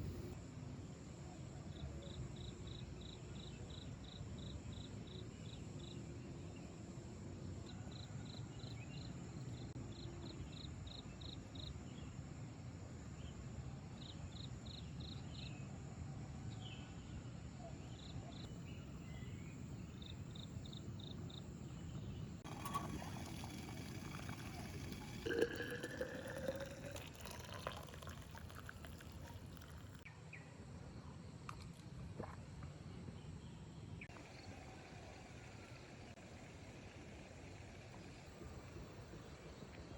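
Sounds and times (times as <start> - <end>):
liquid pouring: 22.4 - 30.0
crickets chirping: 22.5 - 30.0.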